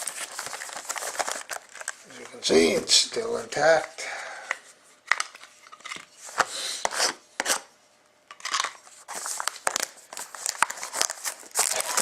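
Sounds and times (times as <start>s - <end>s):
plastic shrink-wrap tearing and crinkling: 0.0s - 2.6s, 9.1s - 12.0s.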